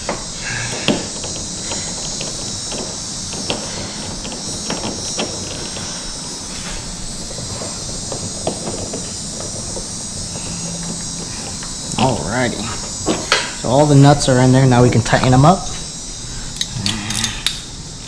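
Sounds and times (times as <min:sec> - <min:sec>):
small nuts clicking and tapping: 0:00.0 - 0:06.0, 0:07.2 - 0:12.0
crickets chirring: 0:00.0 - 0:18.0.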